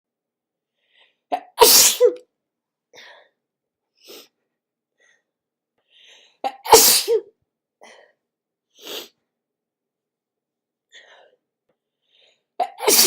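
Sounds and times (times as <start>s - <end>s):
person sneezing: 1.4s - 2.2s, 6.5s - 7.3s, 12.6s - 13.0s.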